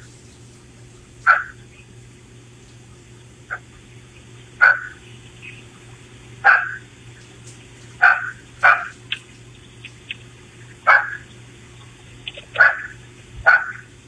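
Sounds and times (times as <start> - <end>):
dog barking: 1.3 - 1.6, 4.6 - 5.0, 6.4 - 6.8, 8.0 - 9.0, 10.8 - 11.2, 12.5 - 13.9.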